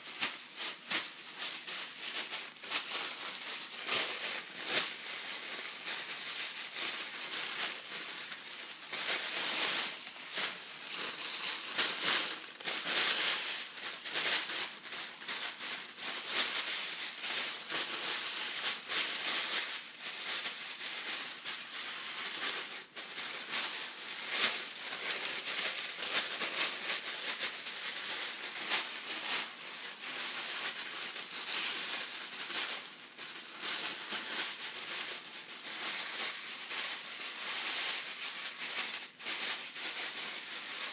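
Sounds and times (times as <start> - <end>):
tissue paper rustling and crinkling: 0.0 - 40.9.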